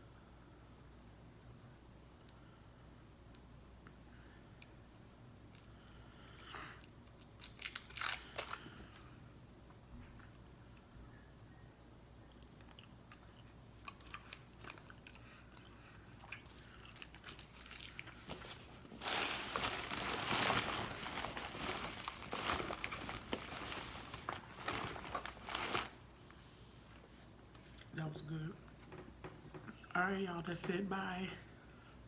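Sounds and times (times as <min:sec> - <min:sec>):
snack crunching while chewed: 0:05.4 - 0:09.0, 0:12.2 - 0:18.3
packaging crinkling: 0:07.1 - 0:09.0, 0:16.5 - 0:26.1.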